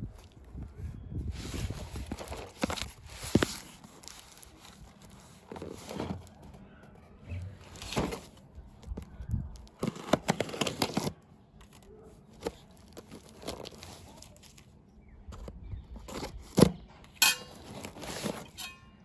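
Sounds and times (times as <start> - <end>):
packaging rustling and tearing: 1.3 - 6.6, 7.4 - 14.7.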